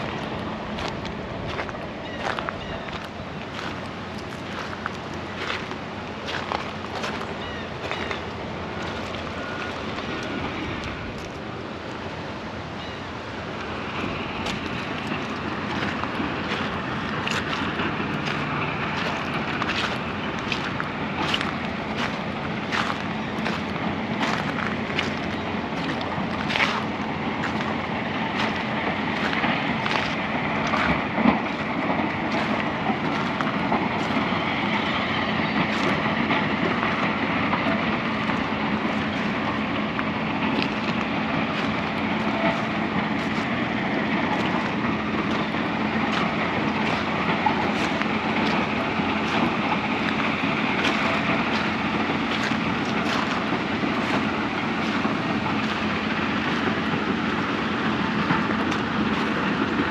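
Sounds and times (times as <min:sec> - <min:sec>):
faint footsteps: 0:00.0 - 0:11.4, 0:13.6 - 0:59.9
river water rushing: 0:00.0 - 0:59.9.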